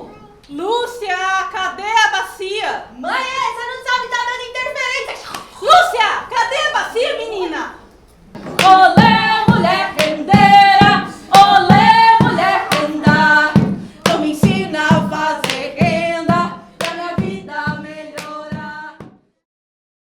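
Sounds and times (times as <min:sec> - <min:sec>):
voices singing: 0:08.4 - 0:19.1
sharp hand claps: 0:08.6 - 0:16.0, 0:16.8 - 0:17.2, 0:18.1 - 0:18.5.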